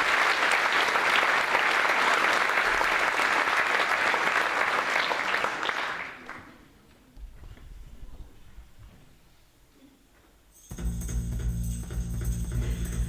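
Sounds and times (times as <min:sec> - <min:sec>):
audience applauding: 0:00.0 - 0:06.7.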